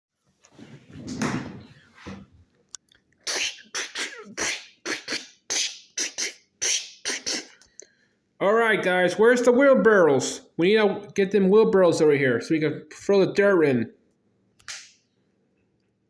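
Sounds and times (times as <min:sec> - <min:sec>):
person making mouth sound effects: 0:03.2 - 0:07.6.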